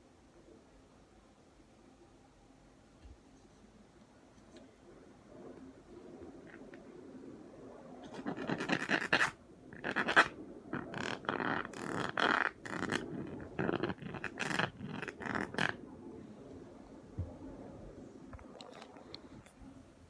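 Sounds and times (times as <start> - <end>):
scratching and scraping strokes: 8.0 - 15.8.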